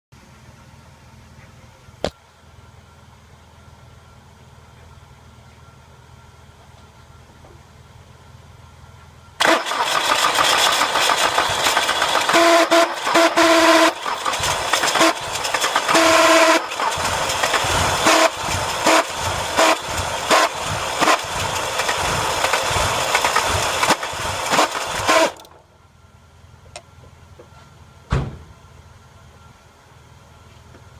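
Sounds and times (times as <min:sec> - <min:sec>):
horn-like tone: 0:12.3 - 0:14.0, 0:18.0 - 0:21.2.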